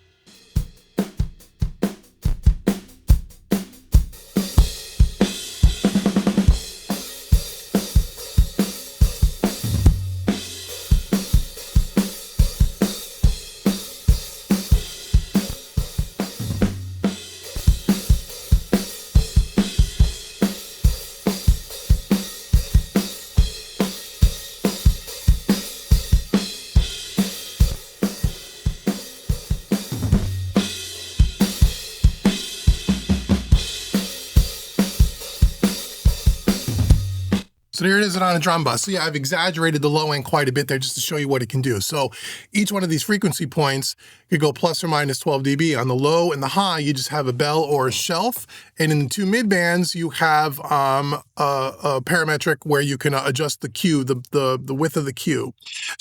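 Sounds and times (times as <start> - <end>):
acoustic drum kit beat: 0.0 - 40.4
tom fills: 37.3 - 45.1.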